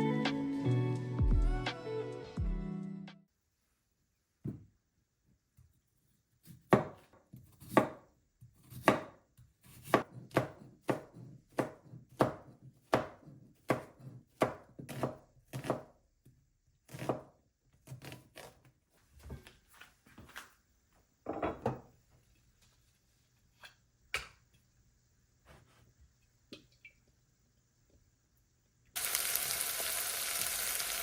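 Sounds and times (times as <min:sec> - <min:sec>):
knife chopping on cutting board: 0:06.4 - 0:15.9, 0:16.9 - 0:18.6.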